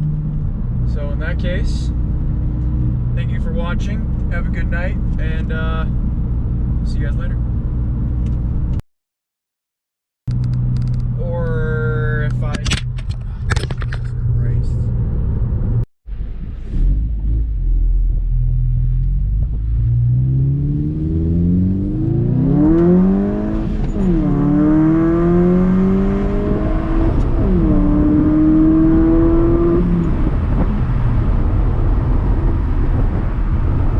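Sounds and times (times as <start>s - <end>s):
low rumble of car driving: 0.0s - 8.8s, 10.3s - 33.9s
car engine revving: 16.4s - 33.9s.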